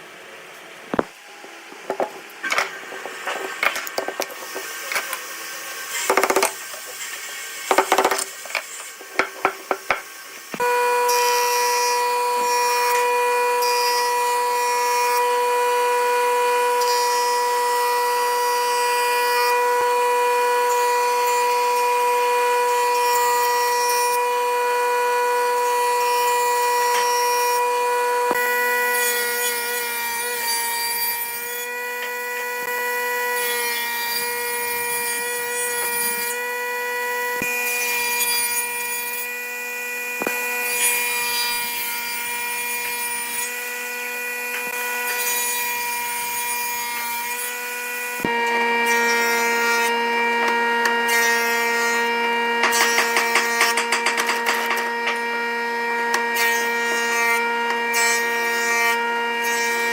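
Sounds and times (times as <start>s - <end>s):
wood lathe whine: 1.9s - 59.9s
knocks of wood and tools: 52.6s - 55.2s.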